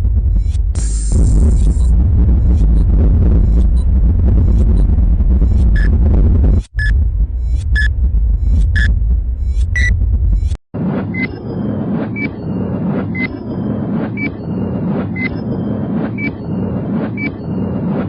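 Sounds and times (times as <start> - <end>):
steady low rumble: 0.0 - 18.0
timer beep with tick: 6.8 - 10.6, 15.2 - 15.6.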